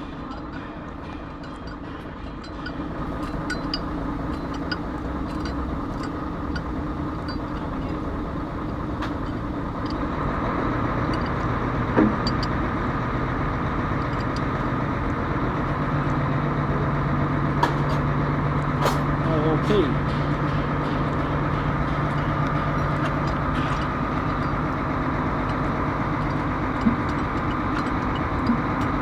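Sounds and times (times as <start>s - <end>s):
engine running: 0.0s - 29.0s.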